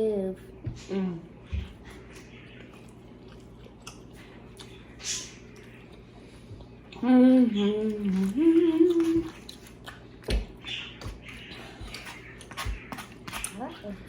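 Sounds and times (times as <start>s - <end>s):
person humming: 7.0s - 9.4s.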